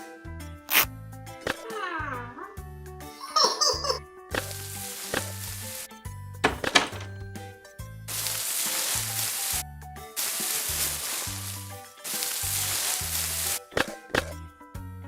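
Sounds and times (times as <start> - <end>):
cartoon music with bass line: 0.6 - 5.8
sharp knocks: 6.4 - 7.1
hissing noise: 10.2 - 13.6.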